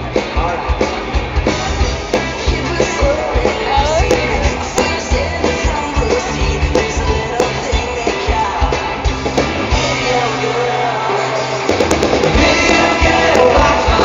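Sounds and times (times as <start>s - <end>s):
drum beat: 0.0s - 10.2s, 11.7s - 14.0s
rock band playing loudly: 0.0s - 14.0s
person singing: 2.3s - 9.1s, 9.8s - 14.0s.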